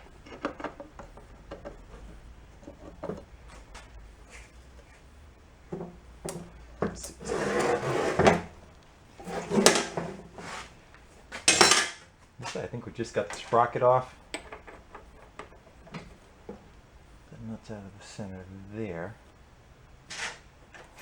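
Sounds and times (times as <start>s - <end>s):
engine parts clicking and knocking: 0.0s - 7.2s, 13.0s - 17.2s
scraping slide on workbench: 5.8s - 12.0s, 20.1s - 21.0s.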